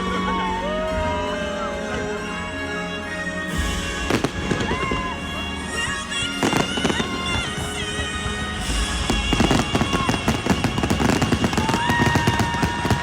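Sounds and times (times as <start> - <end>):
show music with long notes: 0.0 - 13.0
fireworks bursting and crackling: 3.5 - 13.0.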